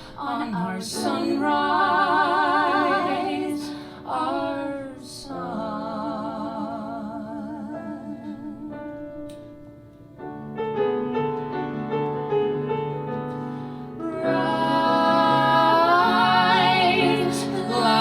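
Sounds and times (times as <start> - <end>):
piano: 0.0 - 18.0
person singing with vibrato: 14.0 - 18.0.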